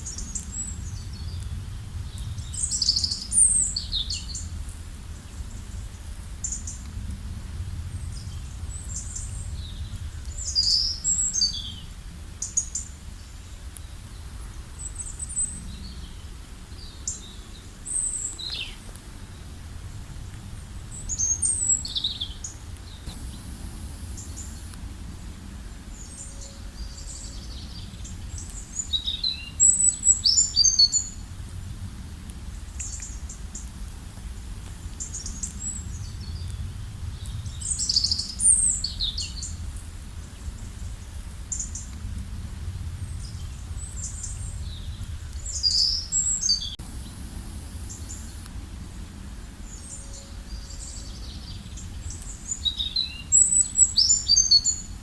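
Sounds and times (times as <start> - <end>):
steady low rumble: 0.0 - 54.0
small birds chirping: 8.0 - 19.5, 20.6 - 31.2, 43.0 - 54.9.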